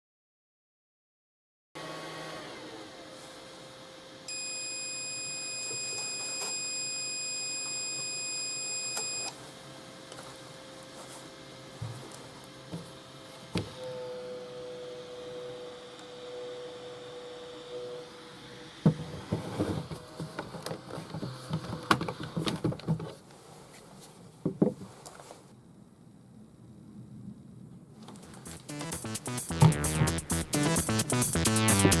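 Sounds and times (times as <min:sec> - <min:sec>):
battery charger cooling fan hum: 0:04.2 - 0:16.4.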